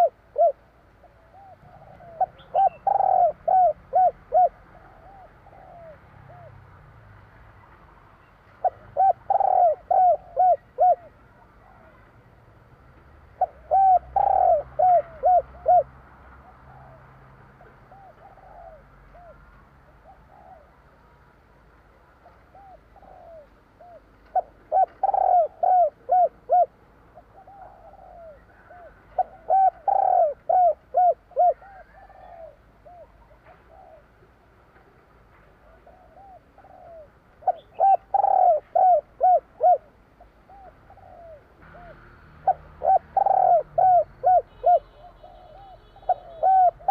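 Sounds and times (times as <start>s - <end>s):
dove cooing: 0.0s - 6.7s, 8.5s - 12.1s, 13.4s - 21.2s, 22.2s - 46.9s.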